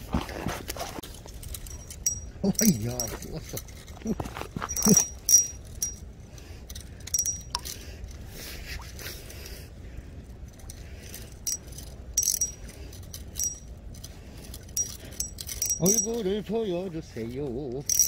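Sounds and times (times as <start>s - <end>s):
soft rustling: 0.0s - 7.0s
metallic clicks of fishing tackle: 1.0s - 8.3s, 10.4s - 16.3s, 17.8s - 18.0s.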